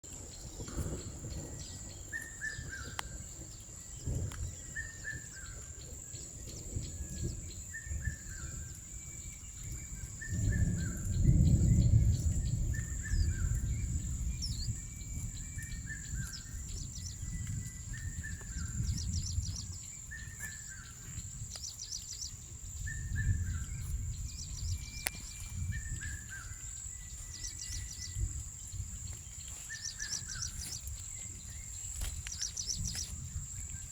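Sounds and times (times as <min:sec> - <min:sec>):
high bird chirps: 0:11.8 - 0:33.1.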